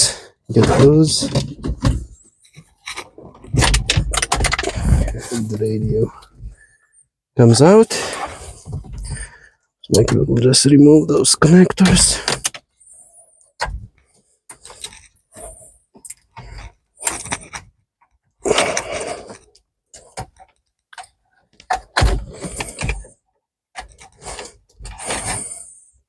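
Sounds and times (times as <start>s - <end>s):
wires and trim rustling: 0.5s - 6.7s.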